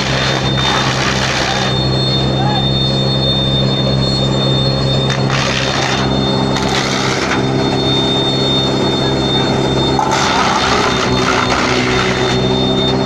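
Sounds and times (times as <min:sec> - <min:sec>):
harsh shredding noise: 0:00.0 - 0:02.1, 0:05.0 - 0:08.2, 0:08.8 - 0:13.0
wood crusher machine humming: 0:00.0 - 0:13.0.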